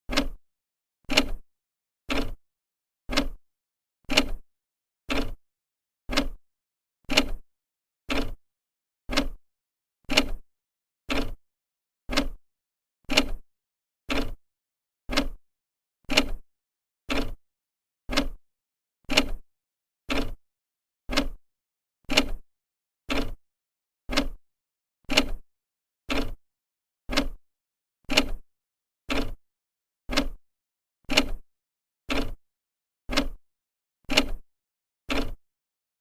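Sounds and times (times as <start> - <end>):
clock ticking: 0.1 - 0.4, 3.1 - 3.4, 6.1 - 6.4, 9.1 - 9.4, 12.1 - 12.4, 15.1 - 15.4, 18.1 - 18.4, 21.1 - 21.4, 24.1 - 24.4, 27.1 - 27.4, 29.1 - 29.4, 30.1 - 30.4, 32.1 - 32.4, 33.1 - 33.4, 35.1 - 35.4.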